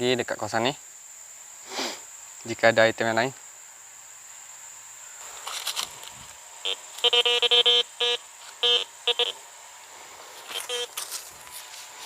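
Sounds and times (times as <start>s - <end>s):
metal detector beeping: 6.6s - 9.4s, 10.5s - 11.1s.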